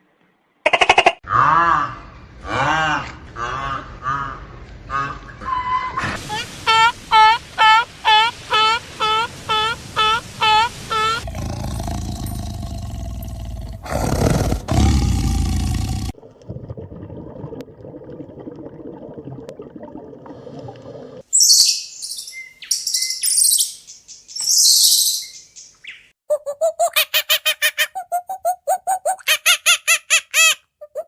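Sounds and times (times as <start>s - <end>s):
high-pitched bird chirps: 21.4s - 29.4s.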